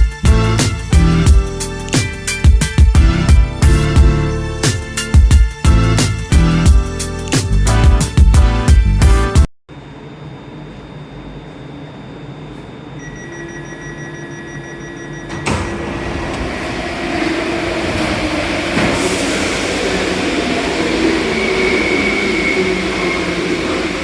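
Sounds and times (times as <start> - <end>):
metro train traction motors whining: 13.6 - 24.0.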